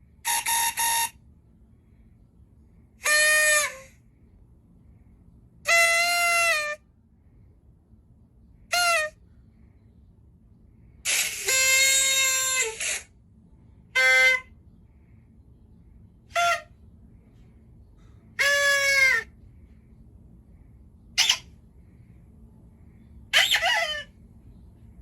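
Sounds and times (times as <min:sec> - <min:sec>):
party horn blower tooting: 0:11.1 - 0:13.1, 0:21.2 - 0:21.4.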